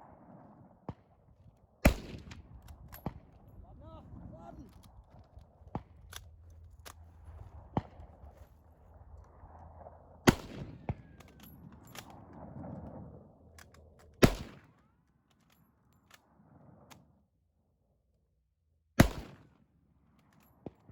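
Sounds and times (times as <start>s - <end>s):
distant gunshots: 1.8s - 3.3s, 10.3s - 11.2s, 14.2s - 14.6s, 19.0s - 19.4s.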